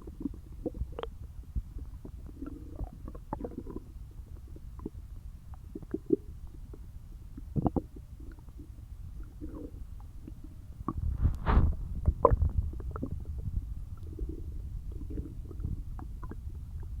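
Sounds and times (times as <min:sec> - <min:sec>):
stomach growling: 0:00.0 - 0:17.0.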